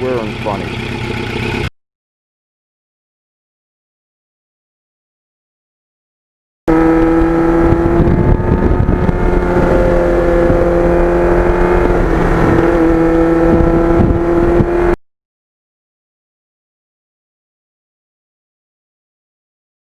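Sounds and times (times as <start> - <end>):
motorcycle engine cruising: 0.0 - 1.7, 6.7 - 15.0
wind buffeting microphone: 6.7 - 15.0.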